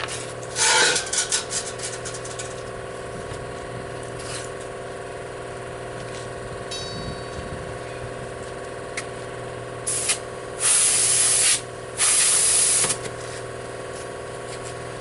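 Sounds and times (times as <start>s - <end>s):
engine running: 0.0s - 15.0s
compressed air hissing: 9.9s - 13.0s.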